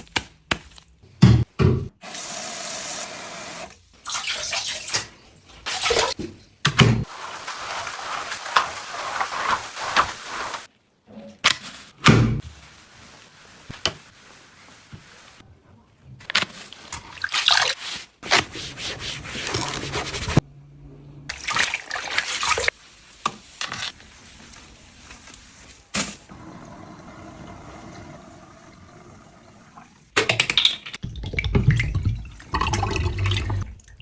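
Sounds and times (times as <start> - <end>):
household handling sounds: 5.5 - 20.4
liquid pouring and splashing: 21.3 - 22.8, 31.0 - 34.0.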